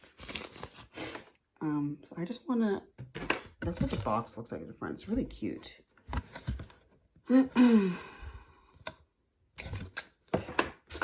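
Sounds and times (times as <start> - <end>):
cardboard box rustling and clicking: 3.0 - 4.3.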